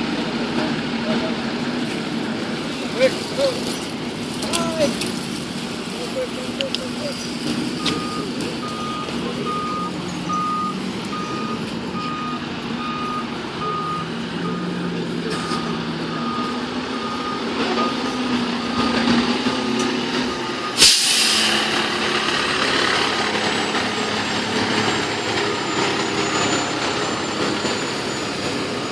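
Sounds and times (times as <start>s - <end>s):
truck engine running: 0.0s - 28.9s
reversing alarm beeping: 7.8s - 19.2s, 23.3s - 28.9s
air brakes hissing: 20.7s - 21.8s.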